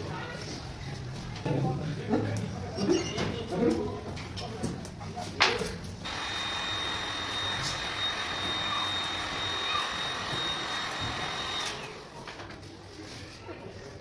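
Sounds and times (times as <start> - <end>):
electric motor tool whining: 6.0 - 12.1.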